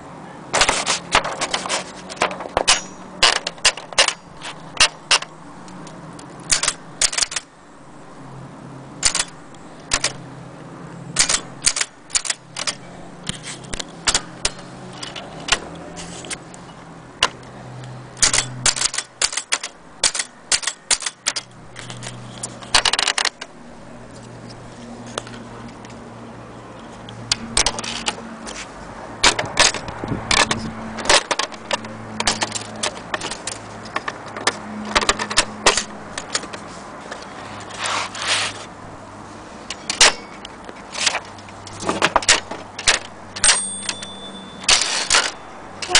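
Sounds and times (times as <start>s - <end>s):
typewriter key strikes: 6.5s - 7.4s, 9.0s - 10.2s, 11.2s - 12.8s, 18.2s - 21.5s, 42.1s - 45.9s.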